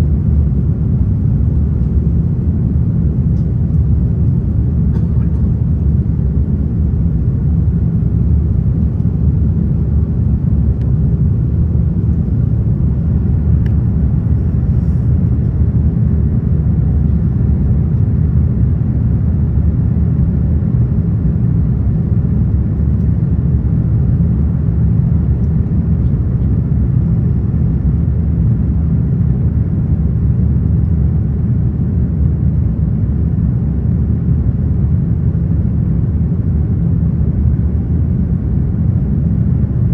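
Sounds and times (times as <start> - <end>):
jet engine cabin drone: 0.0 - 39.9.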